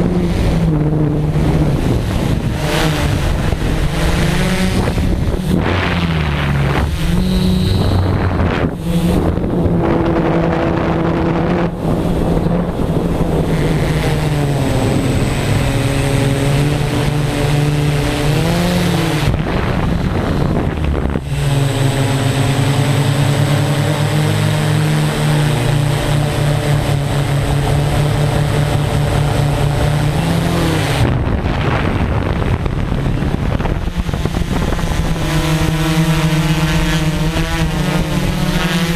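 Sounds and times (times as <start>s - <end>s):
drone motors and propellers humming: 0.0s - 38.9s.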